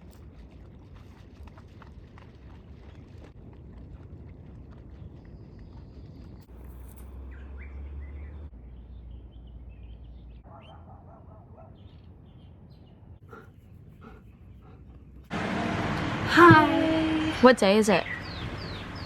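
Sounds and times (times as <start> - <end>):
low outdoor rumble: 0.0 - 10.6, 12.0 - 19.0
bird chirps and calls: 17.9 - 19.0.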